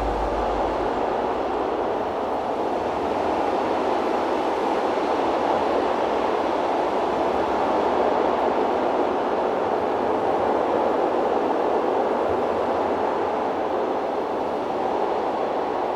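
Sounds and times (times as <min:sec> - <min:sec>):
drone propellers rushing: 0:00.0 - 0:01.3.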